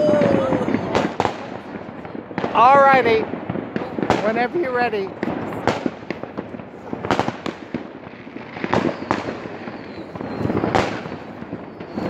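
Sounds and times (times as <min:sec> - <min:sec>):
firecracker crackle: 0:00.0 - 0:12.0
firework bangs: 0:00.0 - 0:12.0.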